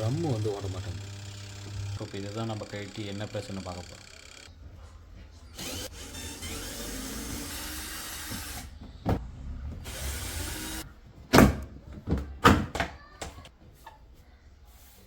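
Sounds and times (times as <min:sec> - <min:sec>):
small electric motor whirring: 0:00.0 - 0:04.5, 0:05.6 - 0:08.7, 0:09.9 - 0:10.9.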